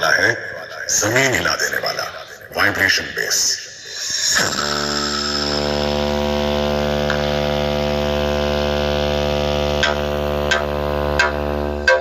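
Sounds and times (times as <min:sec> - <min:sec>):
loud low bass tone: 0:04.4 - 0:12.0.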